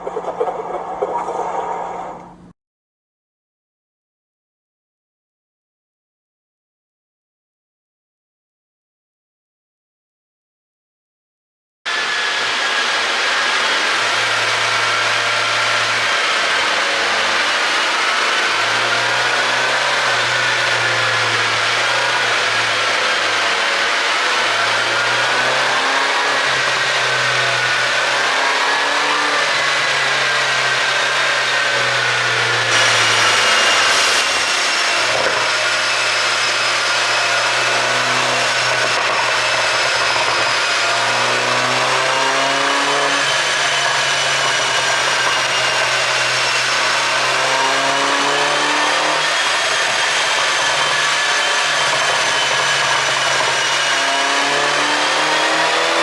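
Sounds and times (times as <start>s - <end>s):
engine rushing burst: 29.5s - 38.8s
car engine running: 31.2s - 36.0s.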